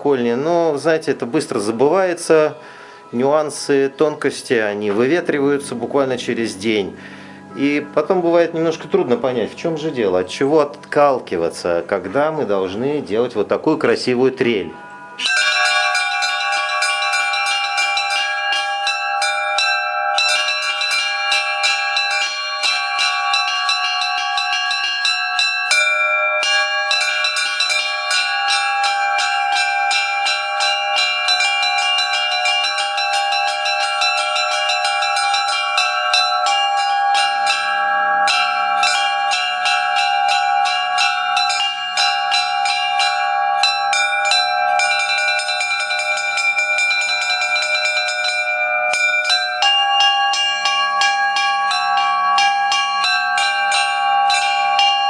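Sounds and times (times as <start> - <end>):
deeper bell ringing: 0.0 - 55.0
small bells ringing in fast trill: 0.0 - 55.0.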